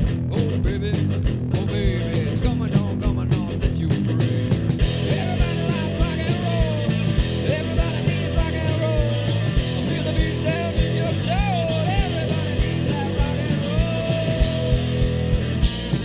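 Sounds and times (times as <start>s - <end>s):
rock music: 0.0s - 16.0s
sliding lead melody: 4.8s - 16.0s.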